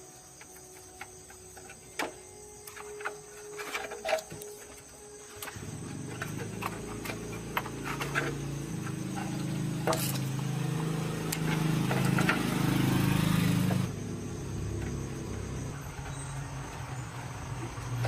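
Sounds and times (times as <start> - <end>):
machine humming: 5.1 - 18.0.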